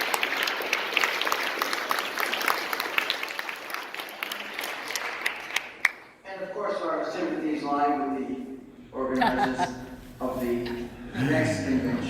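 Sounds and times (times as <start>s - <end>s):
audience applauding: 0.0s - 6.1s.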